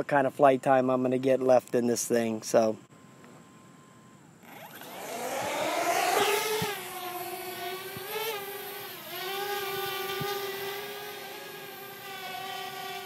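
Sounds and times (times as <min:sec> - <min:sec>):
quadcopter propellers whining: 0:04.4 - 0:13.0.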